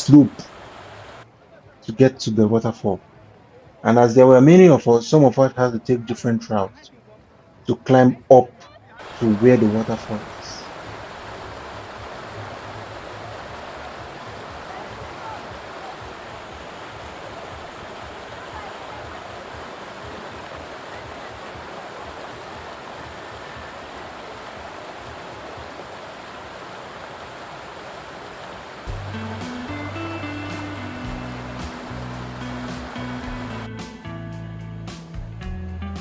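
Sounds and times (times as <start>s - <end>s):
waterfall rushing: 0.0s - 1.3s, 9.0s - 33.7s.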